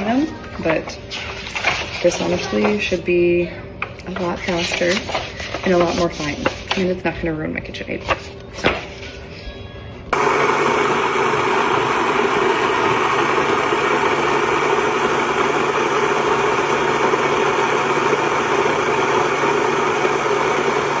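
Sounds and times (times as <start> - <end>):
grain mill whirring: 10.1 - 21.0.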